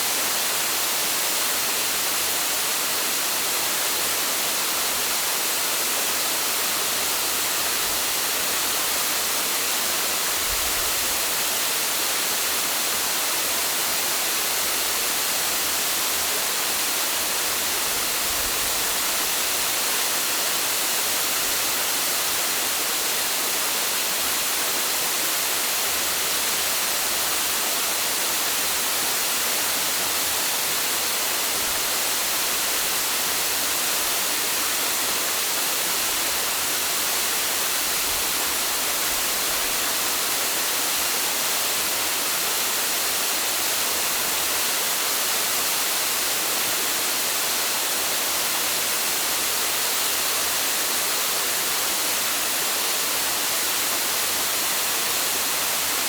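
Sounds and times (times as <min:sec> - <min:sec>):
waterfall rushing: 0:13.9 - 0:56.0.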